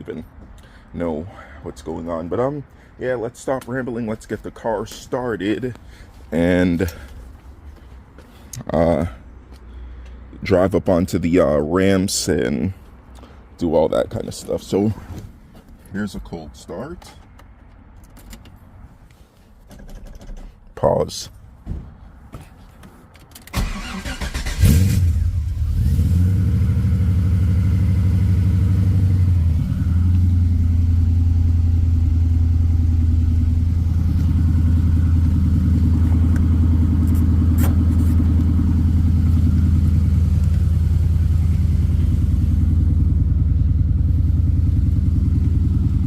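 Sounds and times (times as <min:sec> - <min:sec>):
car engine idling: 0:26.4 - 0:46.0.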